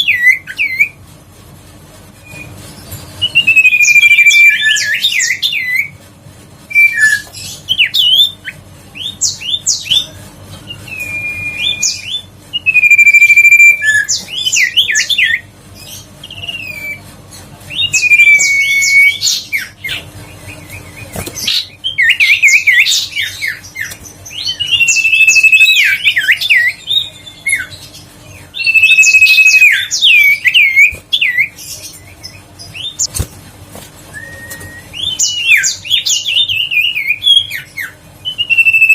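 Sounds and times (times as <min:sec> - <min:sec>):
faint steady hum: 0:00.0 - 0:38.9
bird singing whistled phrases: 0:03.2 - 0:05.9, 0:10.7 - 0:15.4, 0:17.8 - 0:19.8, 0:24.4 - 0:27.7, 0:28.6 - 0:33.1, 0:34.1 - 0:38.9.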